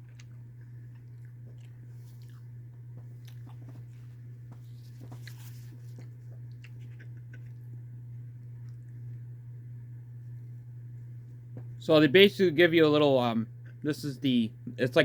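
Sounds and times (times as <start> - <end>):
person chewing: 0.0 - 9.2
low electrical hum: 0.0 - 15.0.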